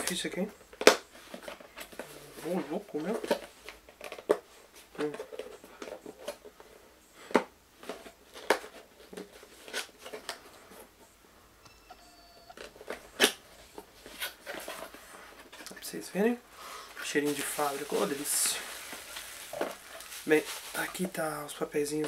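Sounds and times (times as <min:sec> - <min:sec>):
faint beeping tones: 0:11.5 - 0:13.8
packaging rustling: 0:12.5 - 0:22.0.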